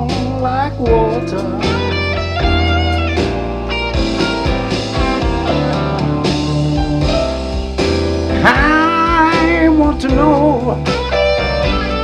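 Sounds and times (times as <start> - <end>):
rock song with guitar: 0.9 - 12.0.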